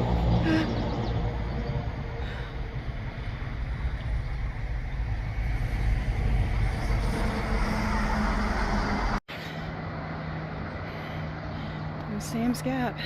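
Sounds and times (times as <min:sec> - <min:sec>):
highway traffic rumble: 0:00.0 - 0:13.0.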